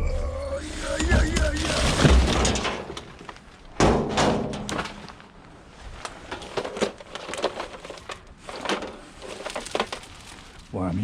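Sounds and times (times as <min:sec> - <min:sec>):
items knocking and rattling in bin: 0:00.8 - 0:05.3, 0:06.2 - 0:10.4
loud clunk in bin: 0:01.0 - 0:03.2, 0:03.8 - 0:05.1.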